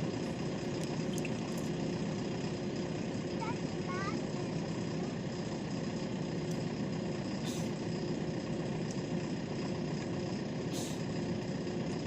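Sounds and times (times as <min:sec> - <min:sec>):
diesel engine idling: 0:00.0 - 0:12.0
short hisses: 0:07.4 - 0:07.8, 0:10.7 - 0:11.0.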